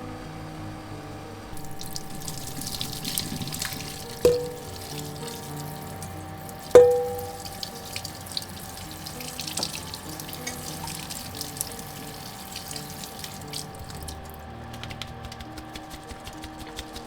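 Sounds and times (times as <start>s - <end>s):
soft background music: 0.0s - 17.0s
tap water splashing in sink: 1.6s - 14.4s
sharp ringing clink: 6.8s - 7.5s.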